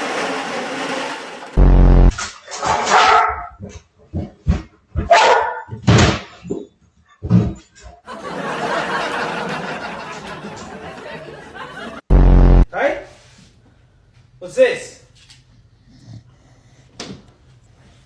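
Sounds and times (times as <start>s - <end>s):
loud low buzz: 1.2s - 2.2s, 12.1s - 12.7s
dog barking and whining: 2.8s - 3.6s, 5.0s - 5.8s.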